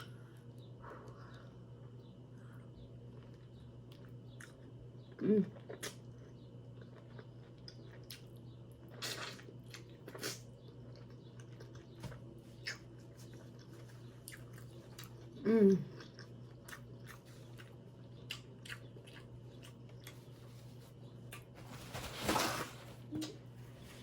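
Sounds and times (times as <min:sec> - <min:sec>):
person chewing: 0:03.1 - 0:21.5.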